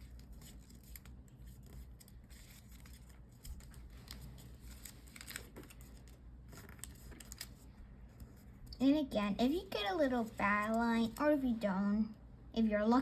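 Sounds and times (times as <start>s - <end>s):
paper rustling: 0.0s - 8.8s, 10.0s - 11.6s.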